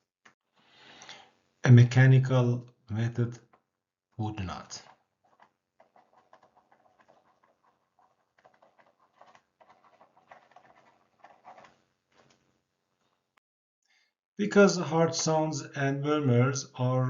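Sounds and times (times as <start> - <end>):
faint soft clicks and patter: 4.6 - 13.2.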